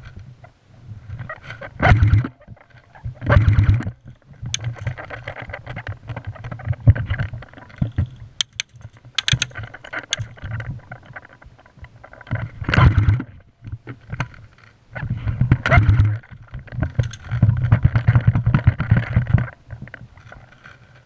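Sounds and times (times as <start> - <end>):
rustling and bumping on microphone: 0.0 - 21.0
sharp clicks: 3.2 - 11.4.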